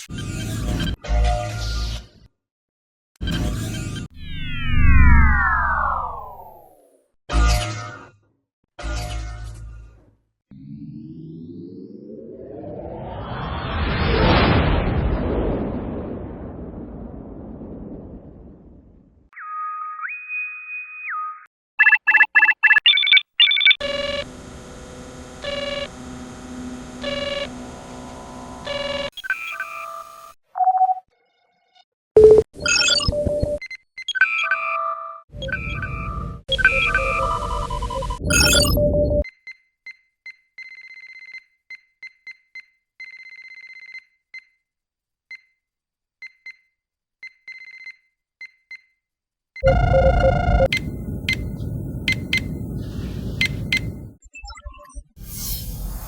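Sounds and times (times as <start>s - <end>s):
rapid electronic warbling trill: 19.4s - 23.7s, 38.2s - 38.8s
two-tone electronic chirp: 19.4s - 23.8s, 28.8s - 31.0s, 32.2s - 44.6s, 49.6s - 55.1s
higher double beeps: 21.8s - 23.8s, 38.2s - 39.2s
short computer beeps: 21.8s - 23.8s, 38.2s - 39.2s, 49.6s - 52.7s, 53.3s - 55.0s.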